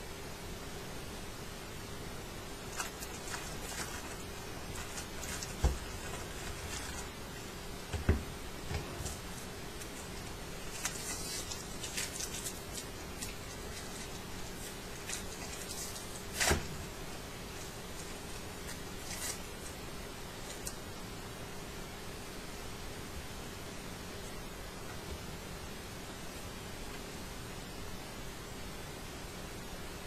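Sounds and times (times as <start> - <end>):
steady low hum: 0.0 - 30.0
wrappers crinkling: 2.6 - 7.2, 8.8 - 16.7, 17.5 - 19.8
dull thumps on a table: 7.9 - 9.1.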